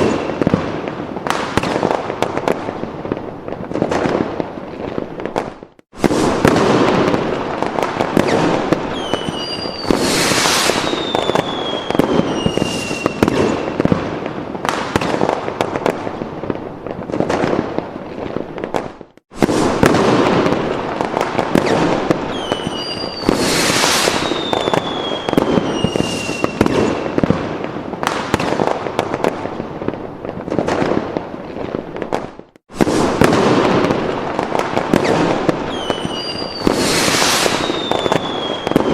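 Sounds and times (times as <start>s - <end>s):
falling firework whistle: 0.0s - 0.7s, 6.0s - 14.0s, 19.4s - 27.4s, 32.8s - 38.9s
fireworks crackling and popping: 0.0s - 38.9s.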